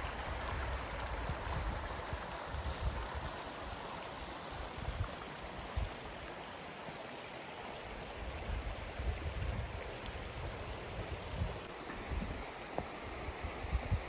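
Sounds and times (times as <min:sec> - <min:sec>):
wind buffeting microphone: 0:00.0 - 0:03.8, 0:08.2 - 0:14.0
flowing water rushing: 0:00.0 - 0:14.0.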